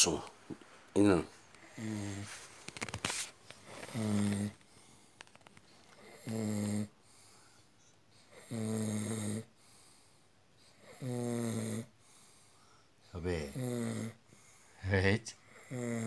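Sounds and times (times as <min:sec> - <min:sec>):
person snoring: 0:01.6 - 0:02.4, 0:03.7 - 0:04.6, 0:06.0 - 0:07.0, 0:08.3 - 0:09.5, 0:10.8 - 0:11.9, 0:13.3 - 0:14.2, 0:15.4 - 0:16.0.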